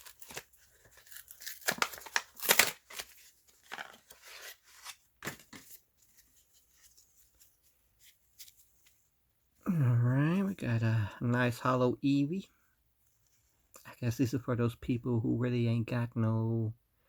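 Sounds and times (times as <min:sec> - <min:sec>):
wrapper tearing and crinkling: 0:00.0 - 0:05.0.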